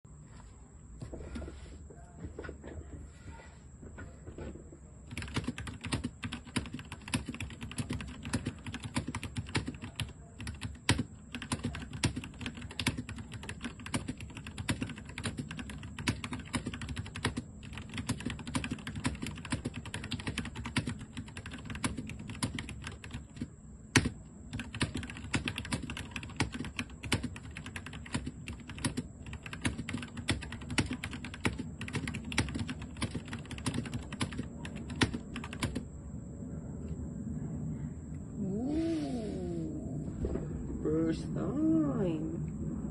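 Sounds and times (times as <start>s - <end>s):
typing on mechanical keyboard: 5.1s - 35.8s.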